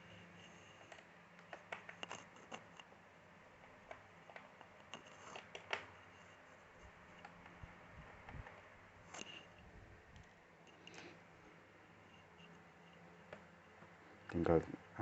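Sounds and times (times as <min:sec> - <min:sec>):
small clicks and taps on laptop: 0:00.8 - 0:03.0, 0:03.6 - 0:06.0, 0:07.1 - 0:09.4, 0:13.2 - 0:13.5.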